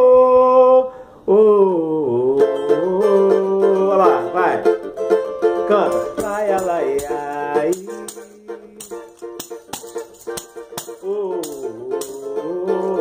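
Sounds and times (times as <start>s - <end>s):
percussion strokes: 5.1s - 13.0s
shaker rattle: 5.8s - 13.0s.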